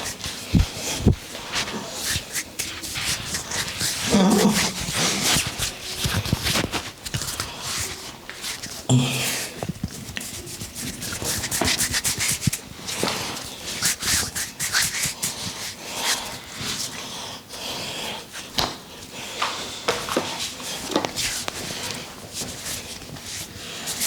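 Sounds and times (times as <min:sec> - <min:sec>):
hands rubbing oiled scalp: 0:00.0 - 0:16.9.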